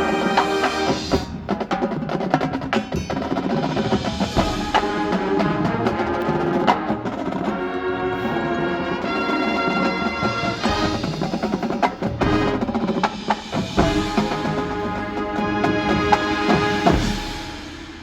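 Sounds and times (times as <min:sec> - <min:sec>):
snare drum rolls: 0:00.0 - 0:07.6, 0:09.2 - 0:18.0
sustained band chords: 0:04.4 - 0:18.0.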